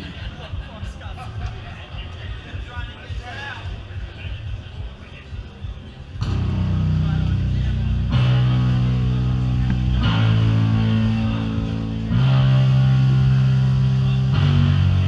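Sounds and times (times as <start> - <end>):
doom metal band playing live: 6.2 - 15.0
heavy sustained guitar chords: 6.2 - 15.0.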